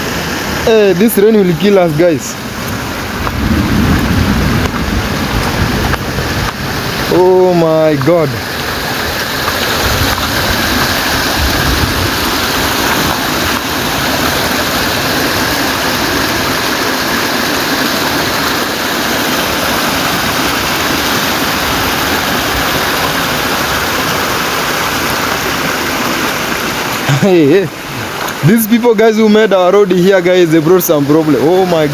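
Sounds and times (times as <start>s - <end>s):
low rumbles: 0.0s - 28.5s
water rushing: 0.0s - 31.9s.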